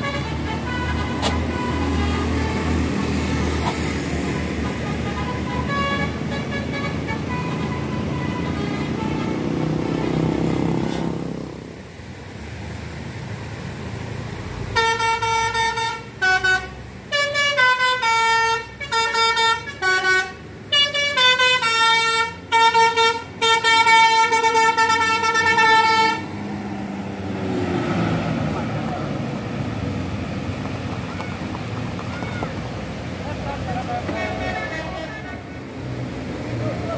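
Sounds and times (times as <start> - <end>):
bus horn playing a tune: 0.0 - 11.1, 14.8 - 26.4, 33.9 - 35.7
bus engine rumble: 0.0 - 36.9
traffic: 0.0 - 36.9.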